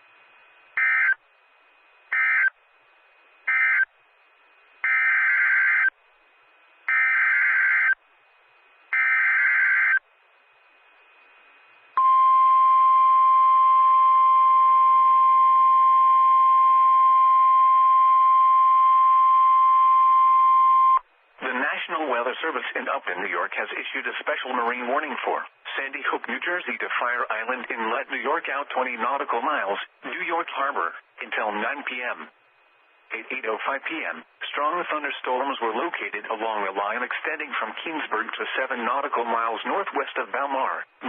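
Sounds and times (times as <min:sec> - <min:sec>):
steady warning alarm tone: 0:00.8 - 0:01.2, 0:02.0 - 0:02.6, 0:03.4 - 0:03.9, 0:04.8 - 0:06.0, 0:06.9 - 0:08.0, 0:08.9 - 0:10.0, 0:11.9 - 0:21.0.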